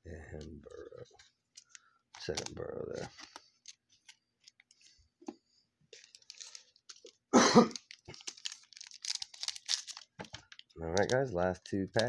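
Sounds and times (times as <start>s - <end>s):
foil wrapper crinkling: 1.5s - 5.0s, 5.9s - 12.0s
person coughing: 7.3s - 7.8s.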